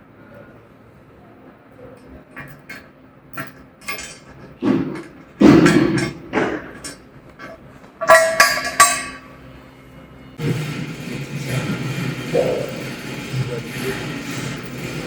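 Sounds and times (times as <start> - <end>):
metal parts knocking and clanking: 2.4 - 9.3
scraping clatter: 2.4 - 9.3, 10.4 - 15.0
ringing metal strikes: 3.9 - 9.4.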